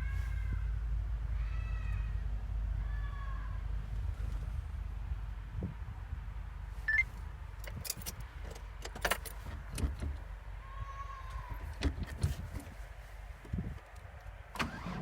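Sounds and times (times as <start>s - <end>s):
diesel engine running: 0.0s - 8.8s.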